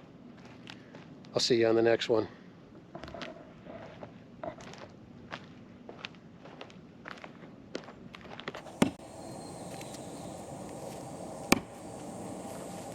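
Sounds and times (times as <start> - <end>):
steady background hiss: 8.6 - 12.9
sharp knock: 11.5 - 11.7.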